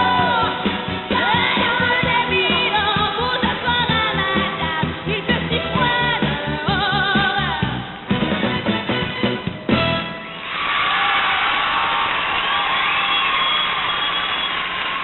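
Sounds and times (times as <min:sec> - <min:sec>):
person singing pop song: 0:00.0 - 0:08.1
band accompaniment: 0:00.0 - 0:10.4.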